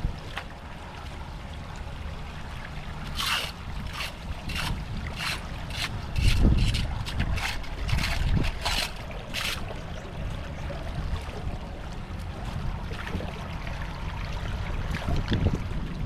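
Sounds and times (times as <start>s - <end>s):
flood water splashing: 0.0s - 16.0s
wind on microphone: 3.1s - 11.6s, 14.4s - 16.0s.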